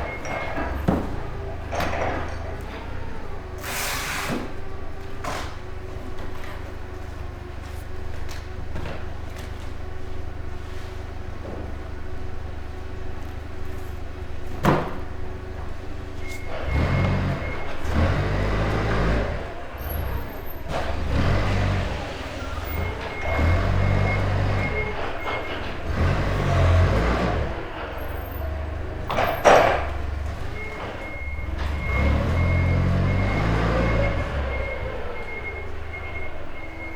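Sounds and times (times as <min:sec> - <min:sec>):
reversing alarm beeping: 0:00.0 - 0:01.4, 0:16.1 - 0:36.9
diesel engine rumbling: 0:00.0 - 0:36.9.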